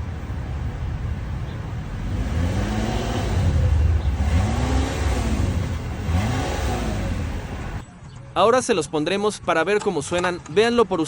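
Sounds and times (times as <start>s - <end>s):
car engine revving: 0.0s - 7.8s.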